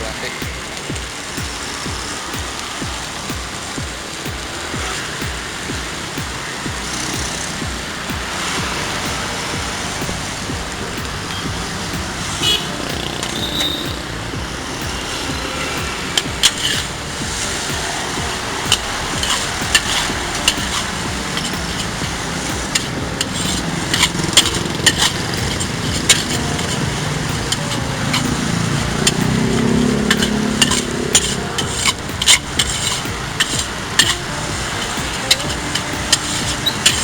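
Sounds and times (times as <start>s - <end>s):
food sizzling: 0.0s - 37.0s
metal spatula scraping a wok: 14.8s - 37.0s.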